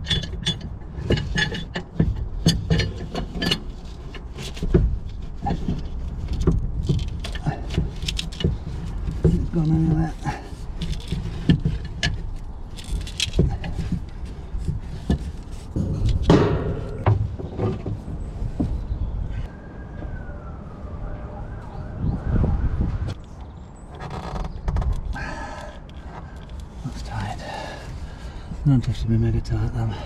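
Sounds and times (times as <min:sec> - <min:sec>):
knocks and scraping of metal parts: 0:00.0 - 0:19.5, 0:23.1 - 0:30.0.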